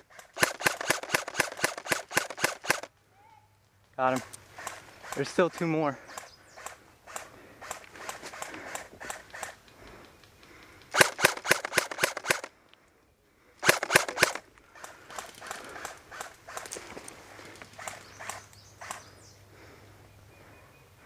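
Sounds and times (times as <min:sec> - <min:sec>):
airsoft guns firing: 0:00.3 - 0:02.9, 0:10.9 - 0:12.5, 0:13.6 - 0:16.8.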